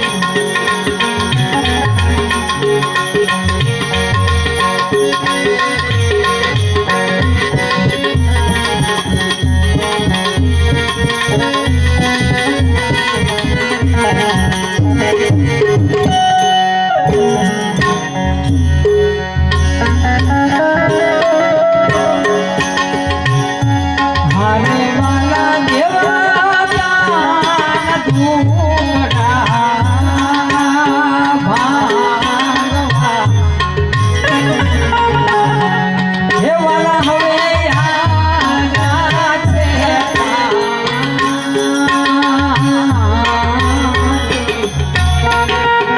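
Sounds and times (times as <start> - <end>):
harmonium sustained notes: 0.0 - 45.9
tabla playing a rhythm: 0.0 - 45.9
wavering lead melody: 0.0 - 45.9
hand drum beat: 26.7 - 40.6.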